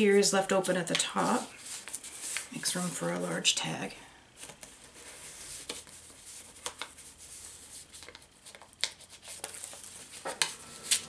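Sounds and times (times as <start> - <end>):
paper pages rustling: 0.9 - 2.6, 4.4 - 11.0.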